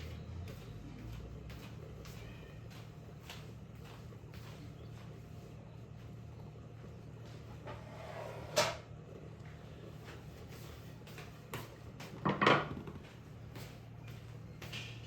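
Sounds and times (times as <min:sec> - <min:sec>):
steady low hum: 0:00.0 - 0:15.0
dishes clattering: 0:12.2 - 0:12.9.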